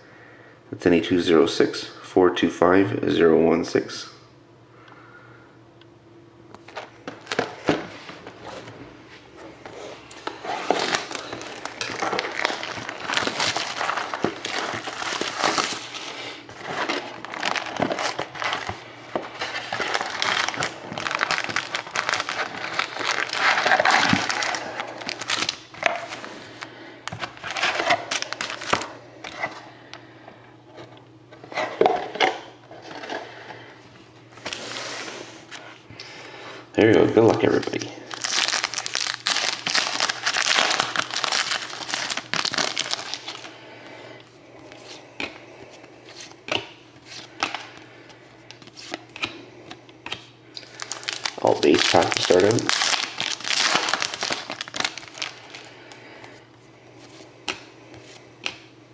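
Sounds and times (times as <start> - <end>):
plastic shrink wrap crinkling: 6.6 - 8.7, 9.6 - 29.4, 36.8 - 43.5, 50.5 - 56.0.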